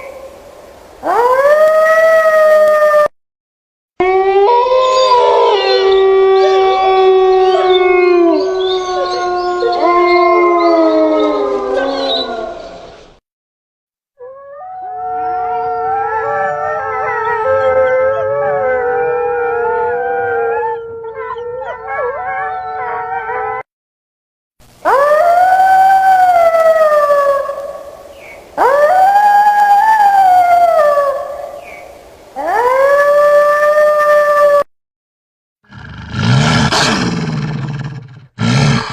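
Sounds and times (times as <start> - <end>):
wolves howling: 4.0 - 12.7, 14.2 - 23.7.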